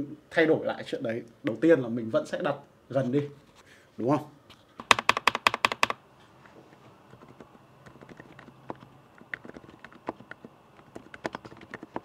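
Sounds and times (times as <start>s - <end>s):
mechanical keyboard typing: 4.8s - 6.0s, 7.1s - 12.0s.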